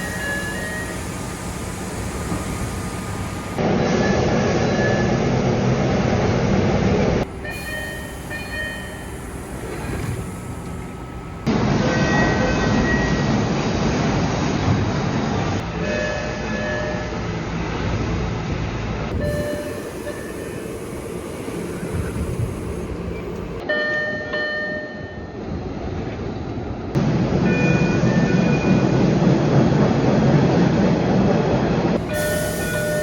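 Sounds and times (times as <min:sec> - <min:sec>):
train rumble and hiss: 0:00.0 - 0:23.7, 0:25.4 - 0:33.0
electronic door chime: 0:07.4 - 0:09.7.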